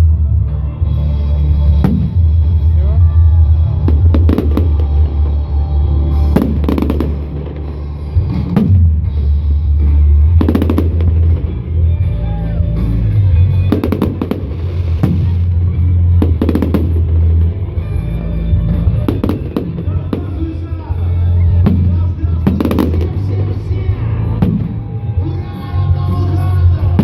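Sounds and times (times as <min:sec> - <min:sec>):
loud music with heavy bass: 0:00.0 - 0:27.0
fireworks bursting: 0:01.7 - 0:02.8, 0:03.5 - 0:27.0.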